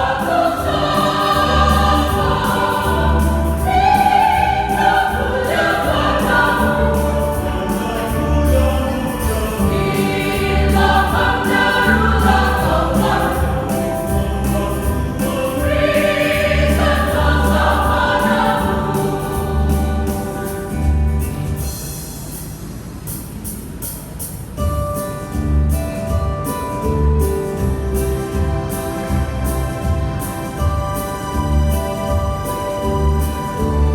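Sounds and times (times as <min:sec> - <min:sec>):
choir singing a hymn: 0:00.0 - 0:21.8
low steady accompaniment: 0:00.0 - 0:22.4, 0:24.6 - 0:33.9.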